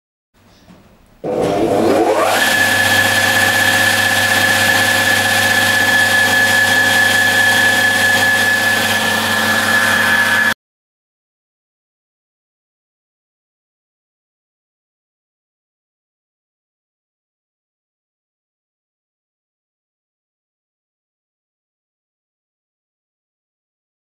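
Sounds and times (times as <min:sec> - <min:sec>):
grinding machine motor whining: 0:01.3 - 0:10.6.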